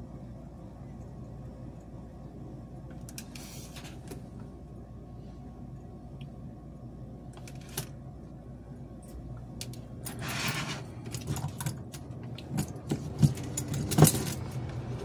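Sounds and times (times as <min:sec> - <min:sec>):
steady low hum: 0:00.0 - 0:15.0
metal parts and tools clicking: 0:09.6 - 0:14.7.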